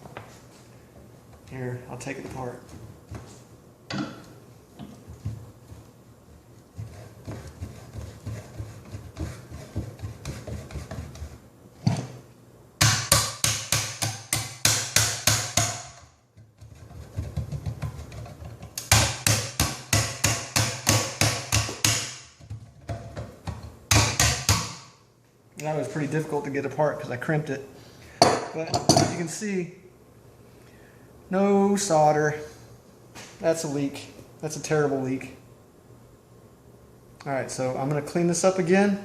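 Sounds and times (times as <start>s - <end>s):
rapid strikes on copper pipe fitting: 12.8s - 22.6s, 23.4s - 24.8s.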